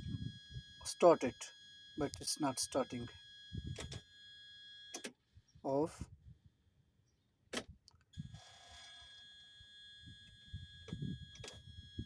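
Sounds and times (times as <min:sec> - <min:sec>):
high electronic warning tone: 0:00.0 - 0:03.7.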